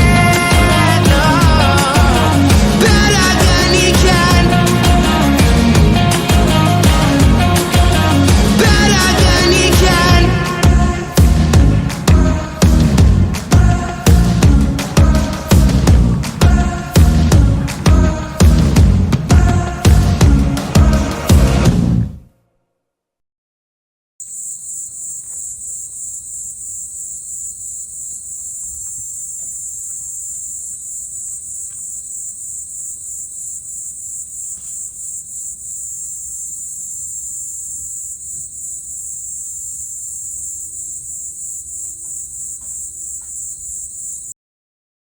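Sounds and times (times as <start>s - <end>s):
crickets chirping: 0.0s - 15.5s, 24.2s - 44.3s
faint ticks: 28.7s - 33.0s.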